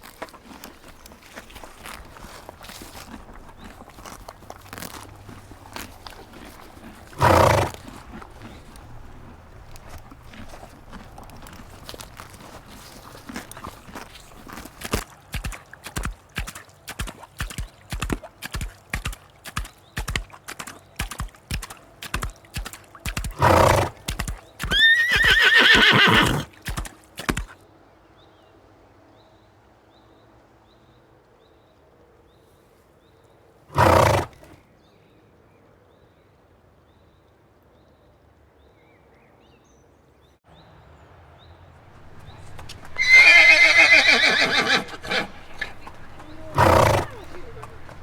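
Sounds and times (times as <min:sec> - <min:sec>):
horse snorting: 0:00.0 - 0:17.1, 0:23.2 - 0:26.6, 0:33.7 - 0:34.6, 0:41.9 - 0:48.0
hooves clip-clopping: 0:00.0 - 0:27.6, 0:41.9 - 0:48.0
horse neighing: 0:00.2 - 0:14.6, 0:23.4 - 0:24.0, 0:24.7 - 0:26.5, 0:33.7 - 0:34.6, 0:42.0 - 0:48.0.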